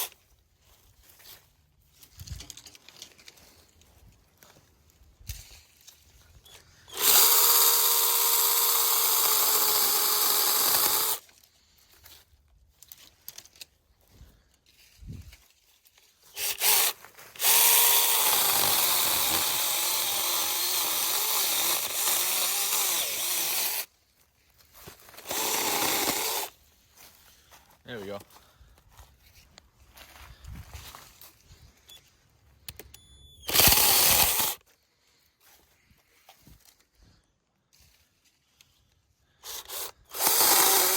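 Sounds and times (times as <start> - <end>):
mini chainsaw cutting branches: 6.8 - 11.2, 16.3 - 23.9, 25.2 - 26.5, 33.4 - 34.6, 39.4 - 40.9.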